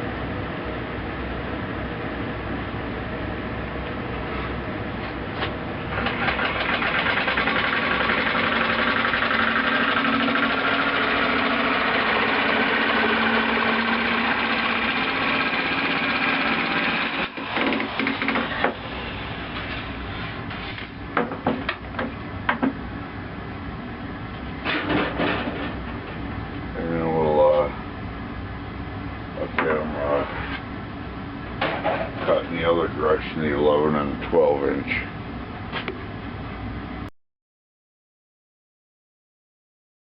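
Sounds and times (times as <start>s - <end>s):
electric power tool running: 5.9s - 19.8s.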